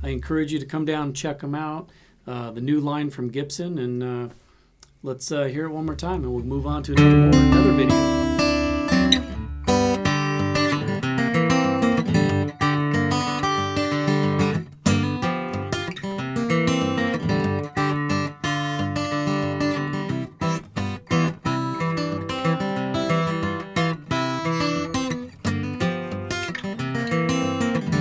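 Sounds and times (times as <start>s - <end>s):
acoustic guitar strummed and picked: 5.8s - 28.0s.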